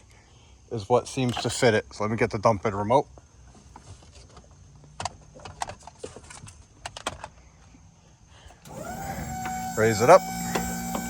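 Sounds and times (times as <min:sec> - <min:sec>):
electric hydraulic pump humming: 0:08.6 - 0:11.0.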